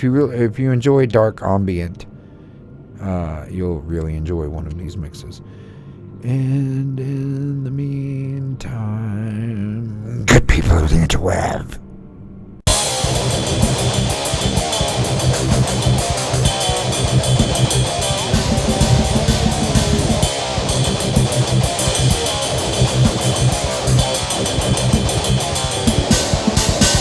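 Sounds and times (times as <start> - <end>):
fast drum beat: 12.7 - 27.0
guitar: 12.7 - 27.0
loud rock music: 12.7 - 27.0.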